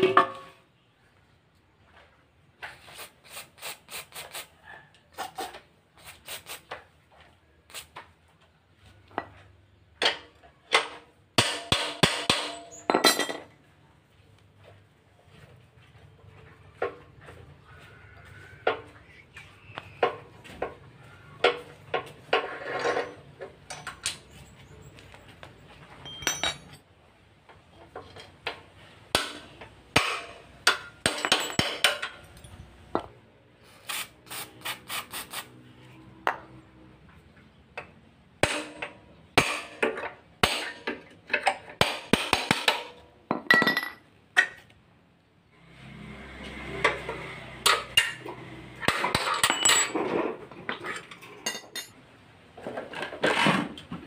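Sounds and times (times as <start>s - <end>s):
metal knocks and clinks: 10.0s - 13.5s, 21.4s - 25.0s, 25.9s - 26.9s, 30.1s - 33.1s, 42.5s - 44.6s, 47.7s - 52.0s
metal scraping: 16.2s - 26.8s.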